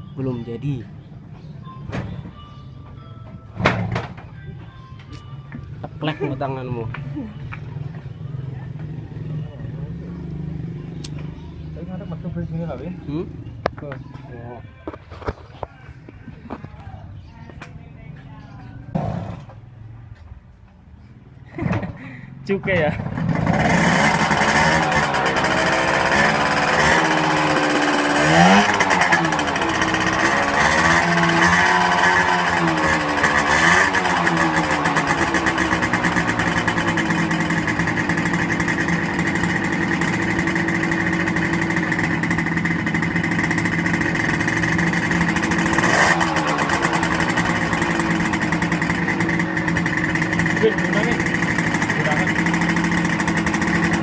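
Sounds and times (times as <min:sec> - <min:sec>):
old vehicle engine revving and idling: 0:21.6 - 0:54.0.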